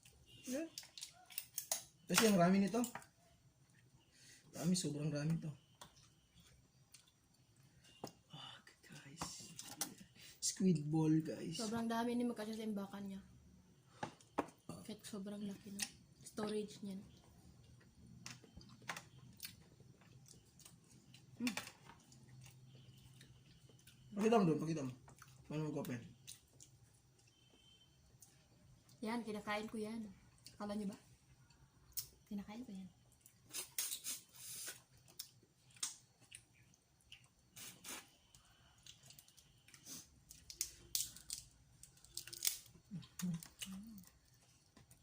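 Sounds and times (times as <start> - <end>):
seafood shells cracking: 0.7 - 3.0, 35.1 - 36.5, 38.8 - 44.9
light clicks and taps of eating: 35.0 - 37.4.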